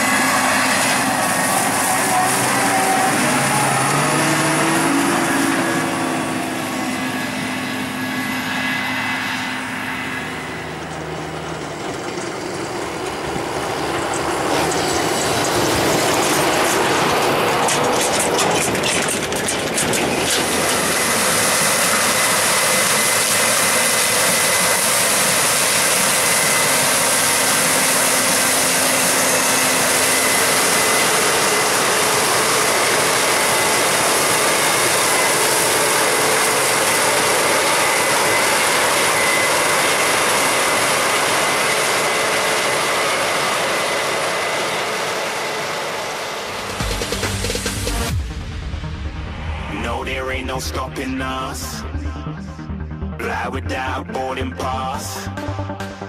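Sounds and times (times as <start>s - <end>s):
harvest machinery diesel engines: 0.0s - 56.0s
rapid clicking and rattling: 14.0s - 21.1s.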